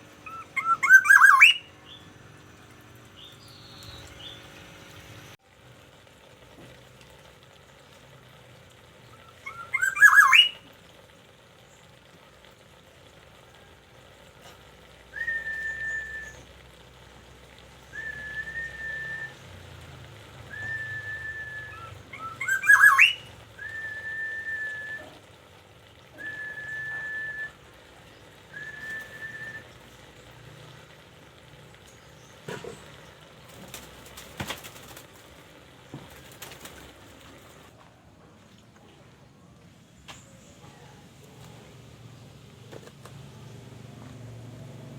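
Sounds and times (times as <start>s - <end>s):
bird rising harsh calls: 0.2s - 2.0s, 9.2s - 10.6s, 21.6s - 23.8s
bird short whistled notes: 20.5s - 25.1s.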